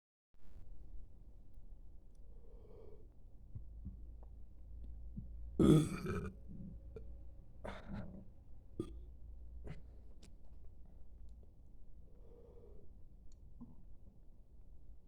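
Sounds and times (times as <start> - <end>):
person belching: 5.6 - 6.4.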